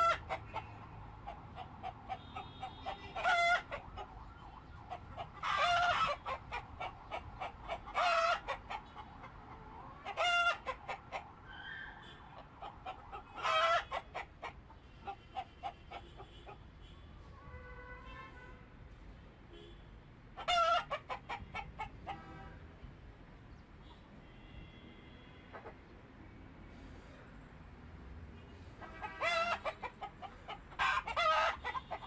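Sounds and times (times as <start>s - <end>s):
loud pitched chicken calls: 0.0s - 9.2s, 9.8s - 16.0s, 20.4s - 22.2s, 28.8s - 32.0s
chickens clucking: 0.0s - 11.4s, 12.3s - 16.6s, 20.4s - 22.2s, 28.8s - 32.0s.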